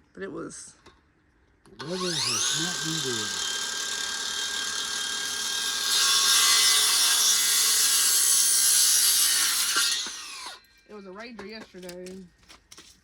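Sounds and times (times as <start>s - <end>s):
power saw cutting wood: 1.8s - 10.6s.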